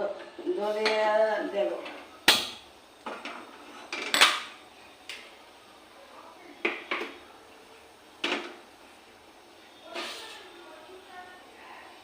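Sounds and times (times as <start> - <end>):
metal cookware clattering: 1.8 - 4.6.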